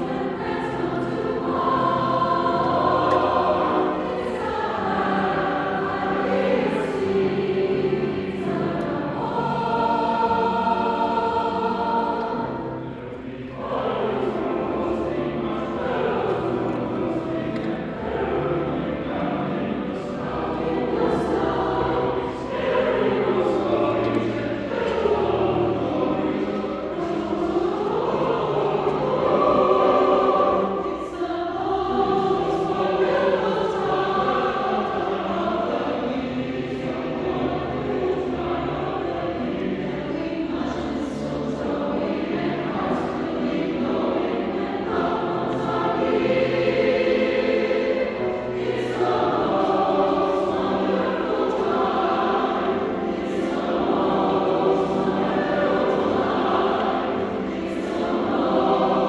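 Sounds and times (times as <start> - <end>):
choir singing: 0.0 - 59.0.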